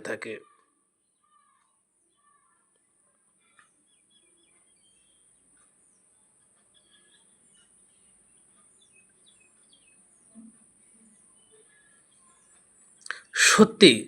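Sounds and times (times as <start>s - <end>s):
birds chirping: 0.0s - 14.0s
steady high-pitched hiss: 6.8s - 14.0s.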